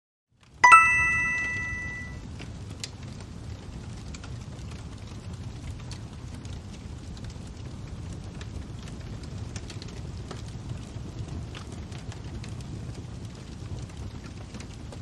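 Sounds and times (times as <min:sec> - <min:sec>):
bell-like chime: 0:00.6 - 0:02.2
fire crackling and popping: 0:02.2 - 0:15.0.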